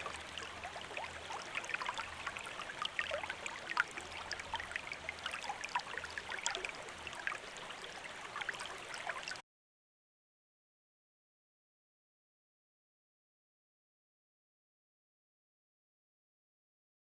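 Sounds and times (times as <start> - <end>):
stream flowing and gurgling: 0.0 - 9.4.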